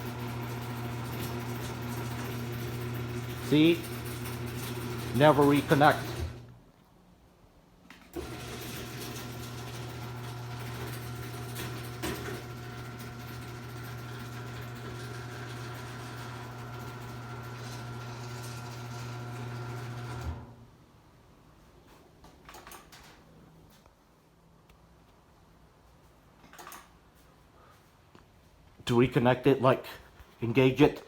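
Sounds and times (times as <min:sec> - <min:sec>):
garage door opener motor humming: 0:00.0 - 0:06.6, 0:08.0 - 0:20.7.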